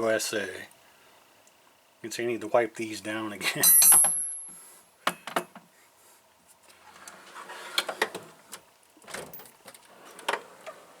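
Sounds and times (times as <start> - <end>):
metal wrenches clinking: 3.6 - 4.5
tools rustling and sliding: 6.7 - 8.4.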